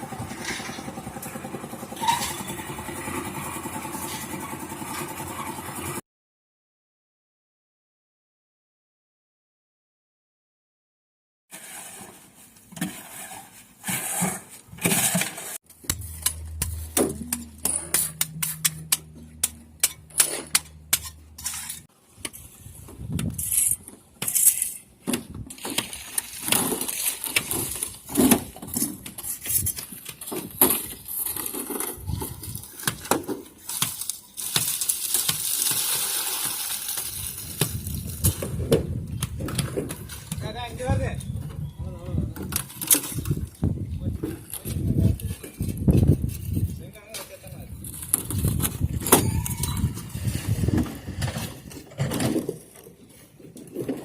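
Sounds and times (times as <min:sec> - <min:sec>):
low hum: 0:15.7 - 0:21.8.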